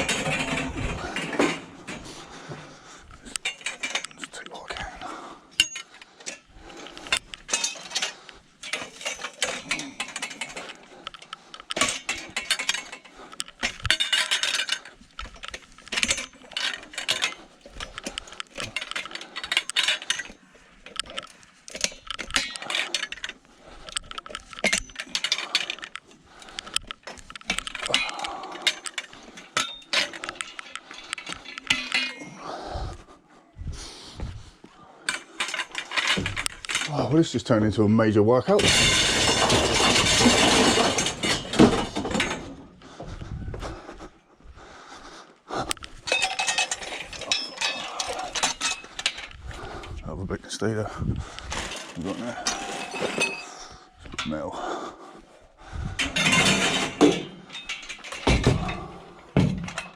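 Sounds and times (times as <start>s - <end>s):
scrap metal clanking: 0.0s - 2.6s, 38.5s - 42.7s, 51.5s - 54.4s, 56.0s - 59.9s.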